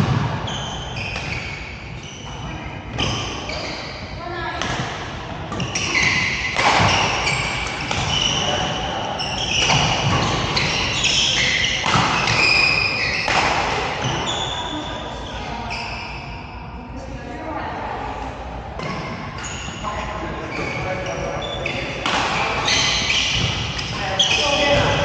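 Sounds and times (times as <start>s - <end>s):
shoes squeaking on court: 0.0s - 4.0s, 5.5s - 16.4s, 18.8s - 25.0s
racket hitting shuttlecock: 4.6s - 8.8s, 9.4s - 14.4s, 22.0s - 25.0s.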